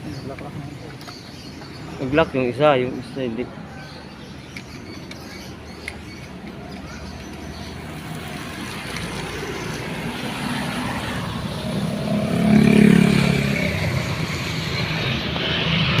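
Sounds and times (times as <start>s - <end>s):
vehicle engine passing by: 7.8s - 16.0s.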